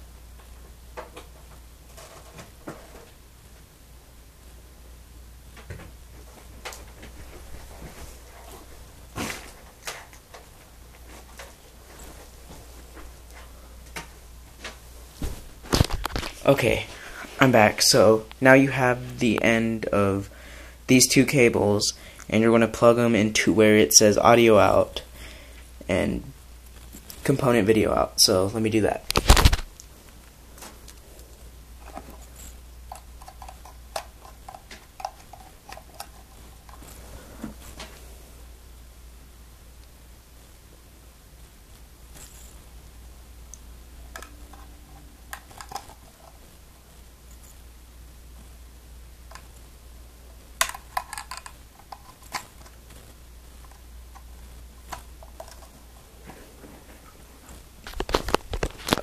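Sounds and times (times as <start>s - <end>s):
low steady hum: 0.0s - 59.0s
plugs and cables clicking: 32.9s - 36.9s, 43.5s - 46.1s, 50.6s - 55.8s.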